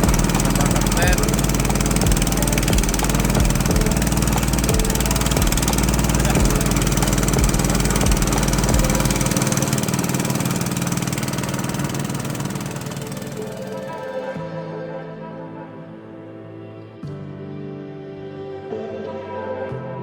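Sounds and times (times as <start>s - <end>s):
boat engine rumbling: 0.0s - 14.2s.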